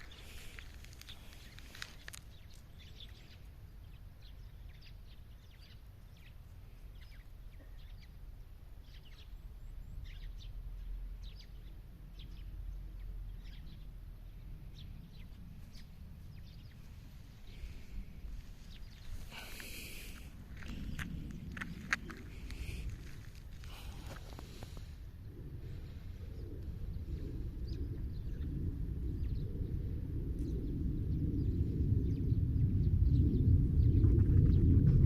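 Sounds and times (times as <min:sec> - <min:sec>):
low outdoor rumble: 0:00.0 - 0:35.0
small birds chirping: 0:00.0 - 0:35.0.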